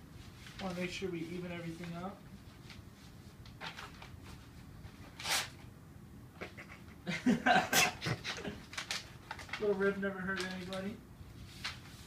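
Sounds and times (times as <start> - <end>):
paper rustling and crinkling: 0.1 - 5.6, 8.4 - 12.0
paper tearing: 5.0 - 5.6.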